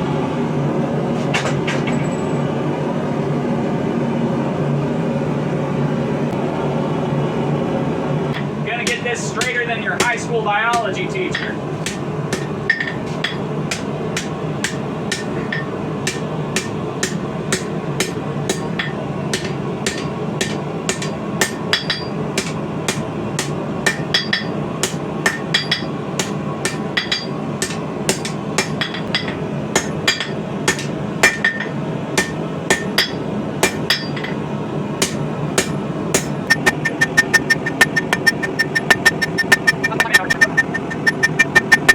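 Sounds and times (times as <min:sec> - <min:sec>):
hammer striking steel on anvil: 0:08.4 - 0:34.4, 0:35.0 - 0:41.9.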